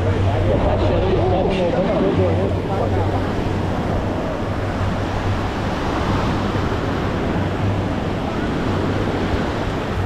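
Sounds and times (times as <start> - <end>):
faint voices of people: 0.0 - 4.7
surf: 0.0 - 10.0
wind buffeting microphone: 0.0 - 10.0.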